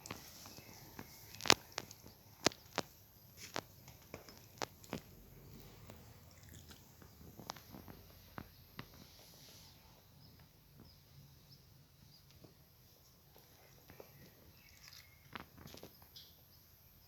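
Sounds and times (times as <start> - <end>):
faint clicks and taps: 0.0 - 5.1
faint high chirps: 13.0 - 16.8.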